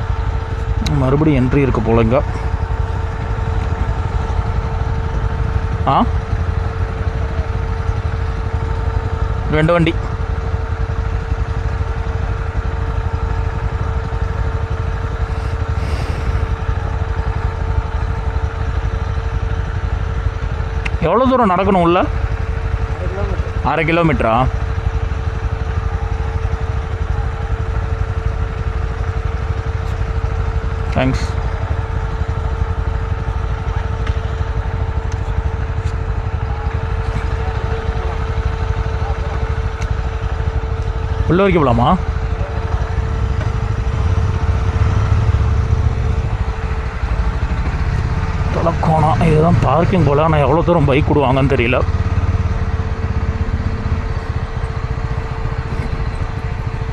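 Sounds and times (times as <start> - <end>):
motorcycle engine idling: 0.0 - 56.9
low rumble of wind noise: 52.2 - 56.9.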